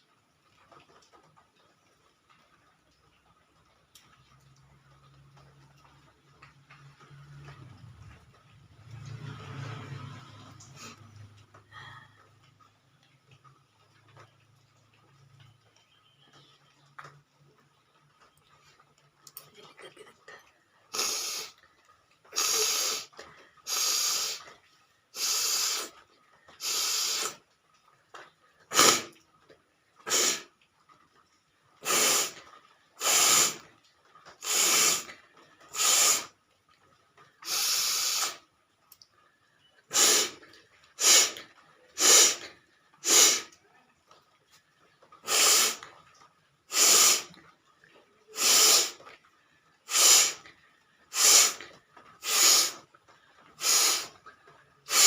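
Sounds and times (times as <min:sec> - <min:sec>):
person blowing air through nose: 0:20.9 - 0:21.5, 0:22.3 - 0:23.1, 0:23.7 - 0:24.5, 0:25.2 - 0:25.9, 0:26.6 - 0:27.4, 0:28.7 - 0:29.1, 0:30.1 - 0:30.5, 0:31.8 - 0:32.4, 0:33.0 - 0:33.6, 0:34.4 - 0:35.1, 0:35.7 - 0:36.3, 0:37.4 - 0:38.4, 0:39.9 - 0:40.4, 0:41.0 - 0:41.4, 0:42.0 - 0:43.5, 0:45.2 - 0:45.8, 0:46.7 - 0:47.4, 0:48.4 - 0:49.0, 0:49.9 - 0:50.4, 0:51.1 - 0:51.6, 0:52.2 - 0:52.8, 0:53.6 - 0:54.1.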